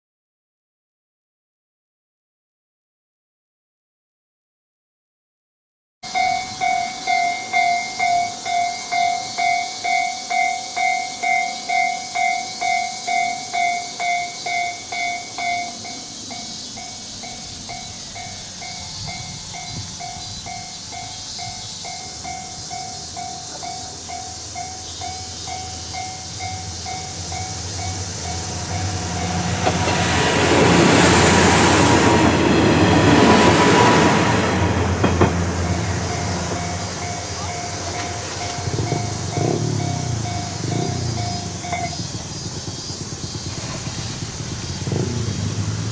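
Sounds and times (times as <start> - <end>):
level crossing bell ringing: 6.0 - 28.6, 36.0 - 42.2
diesel railcar passing: 6.0 - 45.9.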